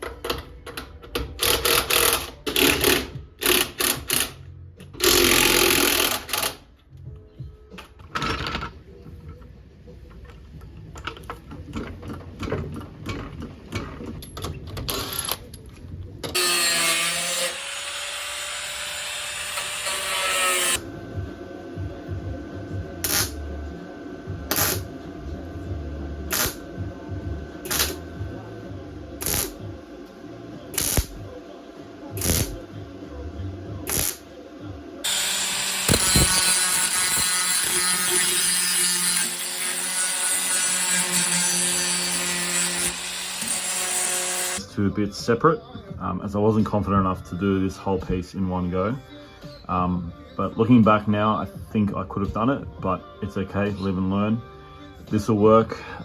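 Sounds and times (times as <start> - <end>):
power tools running: 16.4 - 20.8, 35.0 - 44.6.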